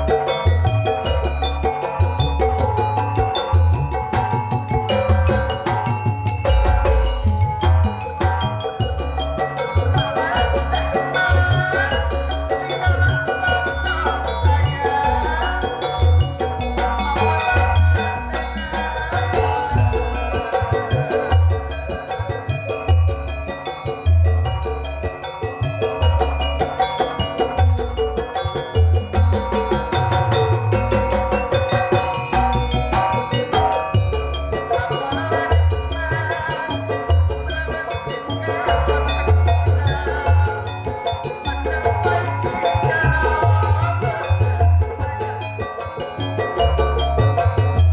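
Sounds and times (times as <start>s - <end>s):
low drum beats: 0.0s - 14.0s
mallet percussion: 0.0s - 47.9s.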